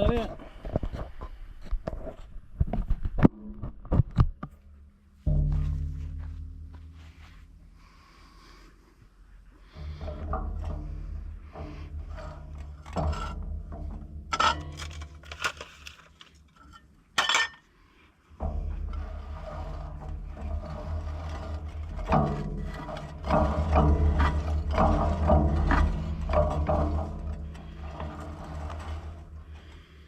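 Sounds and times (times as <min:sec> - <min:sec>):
low hum: 0:00.3 - 0:17.1, 0:17.8 - 0:30.0
metal clanks: 0:09.6 - 0:30.0
metal parts clinking and rubbing: 0:14.3 - 0:17.7.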